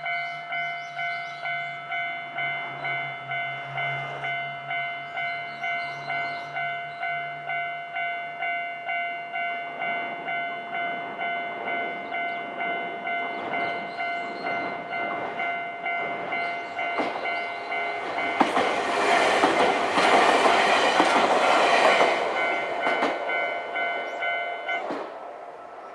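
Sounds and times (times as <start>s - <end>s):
electric train wheel clatter: 9.7s - 25.3s.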